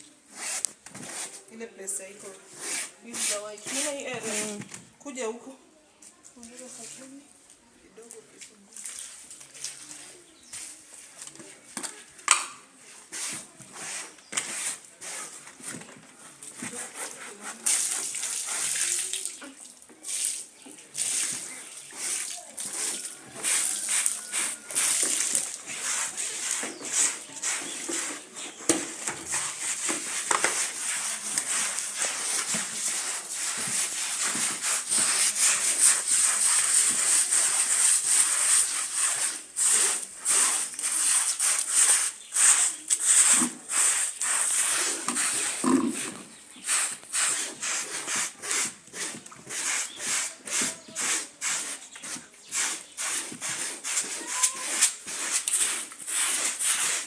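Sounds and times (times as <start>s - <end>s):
scrubbing wet carpet by hand: 2.5s - 4.6s, 13.0s - 15.4s, 16.3s - 19.4s, 20.0s - 57.0s.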